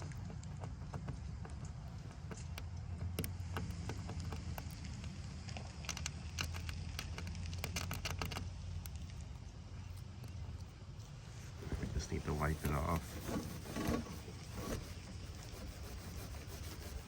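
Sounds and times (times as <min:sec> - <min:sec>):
razor blade scraping glass: 0:12.2 - 0:17.0.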